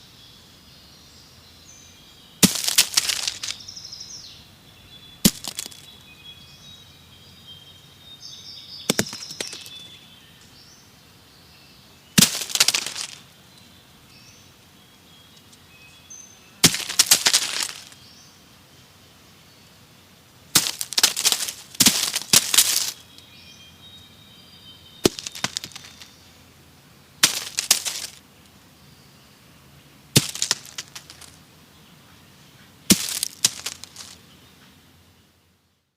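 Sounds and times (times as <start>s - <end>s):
birds chirping faintly: 0.0s - 35.9s
pine cones dropping on leaves: 2.4s - 3.7s, 5.2s - 6.0s, 8.8s - 10.0s, 12.2s - 13.3s, 16.6s - 18.0s, 20.5s - 23.2s, 25.0s - 26.2s, 27.2s - 28.2s, 30.1s - 31.4s, 32.9s - 34.2s.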